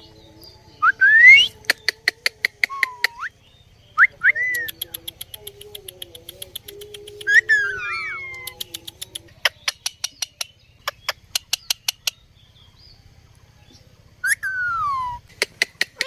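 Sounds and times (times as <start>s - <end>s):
parrot clicking chirps: 1.5s - 3.3s, 4.3s - 12.2s, 14.4s - 16.0s.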